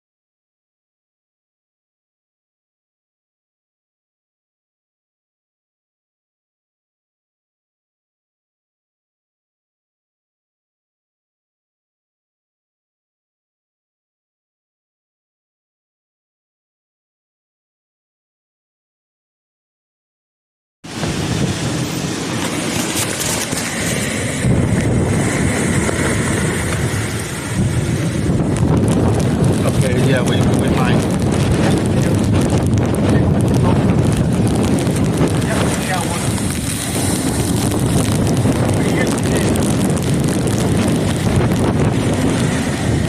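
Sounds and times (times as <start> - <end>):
storm wind buffeting microphone: 20.9 - 43.0.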